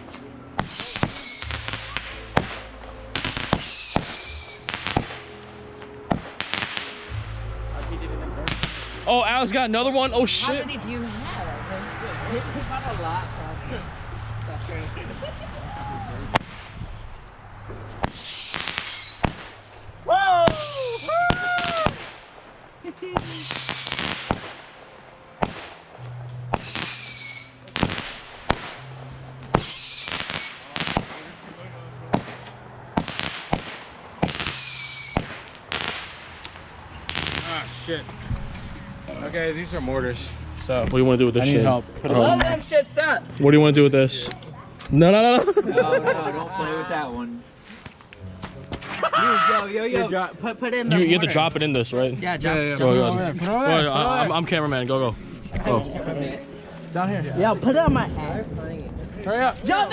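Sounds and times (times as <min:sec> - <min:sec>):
crackling pops: 0:00.0 - 0:09.2, 0:16.0 - 0:31.5, 0:32.1 - 0:38.8
firework bangs: 0:00.0 - 0:09.6, 0:11.1 - 0:38.8
firework whistles: 0:00.6 - 0:05.3, 0:18.0 - 0:22.3, 0:23.2 - 0:25.8, 0:26.5 - 0:28.9, 0:29.5 - 0:31.2, 0:33.0 - 0:37.7.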